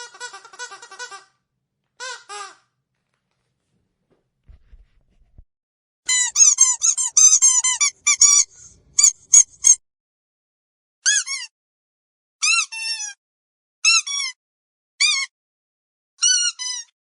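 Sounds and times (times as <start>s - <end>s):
squeaky dog toy squeaking: 0.0s - 1.3s, 2.0s - 2.6s, 6.1s - 9.8s, 11.0s - 11.5s, 12.4s - 13.2s, 13.8s - 14.4s, 15.0s - 15.3s, 16.2s - 16.9s.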